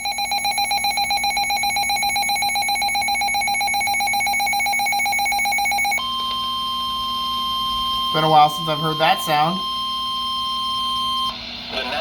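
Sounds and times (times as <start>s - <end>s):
pulsing high alarm beep: 0.0s - 11.4s.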